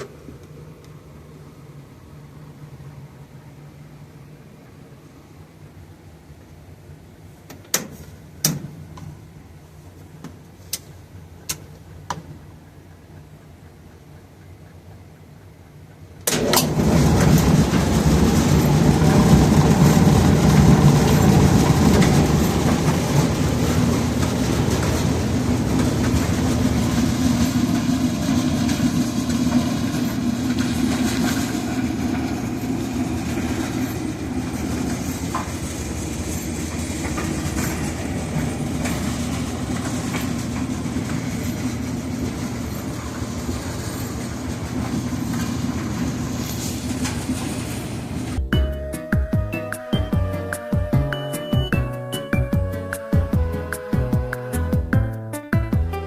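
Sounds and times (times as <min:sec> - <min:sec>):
clothes dryer drum tumbling: 0:16.2 - 0:48.6.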